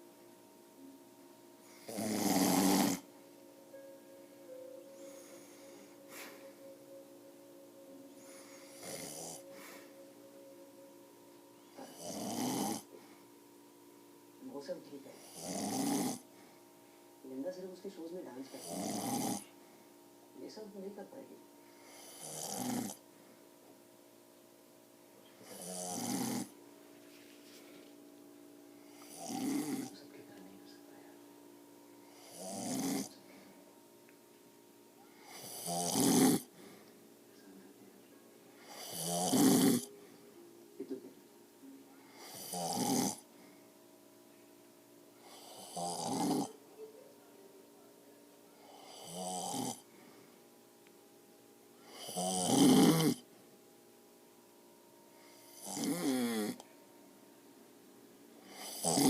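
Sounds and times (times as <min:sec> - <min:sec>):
man snoring heavily: 0:01.7 - 0:03.1, 0:08.2 - 0:09.6, 0:11.8 - 0:13.0, 0:15.2 - 0:16.2, 0:18.5 - 0:19.5, 0:21.8 - 0:23.0, 0:25.4 - 0:26.5, 0:28.9 - 0:30.0, 0:32.1 - 0:33.2, 0:35.2 - 0:36.5, 0:38.6 - 0:39.9, 0:42.2 - 0:43.3, 0:45.2 - 0:46.6, 0:48.6 - 0:49.9, 0:51.8 - 0:53.2, 0:55.5 - 0:56.6, 0:58.4 - 0:59.0.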